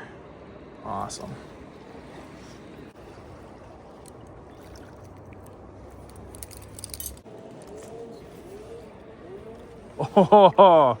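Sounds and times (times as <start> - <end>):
steady low background rush: 0.0 - 11.0
light metallic jingling: 3.9 - 8.8.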